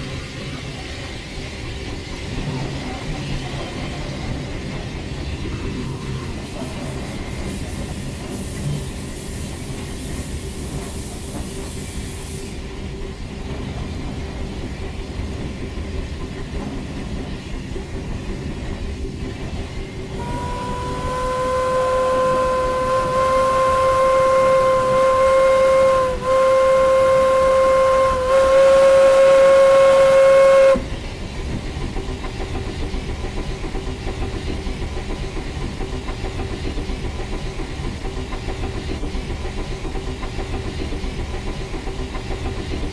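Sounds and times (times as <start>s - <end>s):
locomotive running rhythmically: 0.0s - 42.9s
steam locomotive whistle blast: 20.1s - 31.0s.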